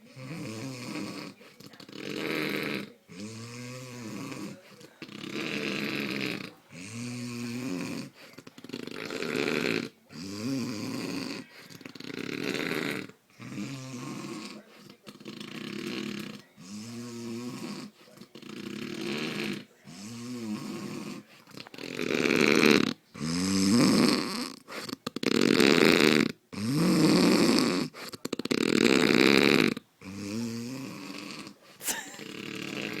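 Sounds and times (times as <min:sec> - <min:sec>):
man snoring heavily: 0:00.2 - 0:01.4, 0:02.0 - 0:14.6, 0:28.5 - 0:33.0.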